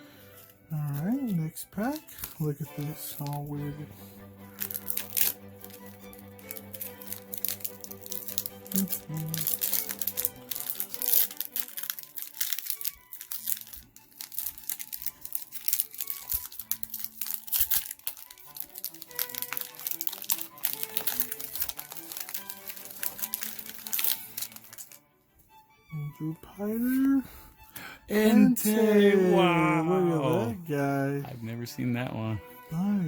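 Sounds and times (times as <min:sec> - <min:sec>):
background music: 0:00.0 - 0:33.0
foil wrapper crinkling: 0:00.3 - 0:01.3, 0:04.4 - 0:25.0.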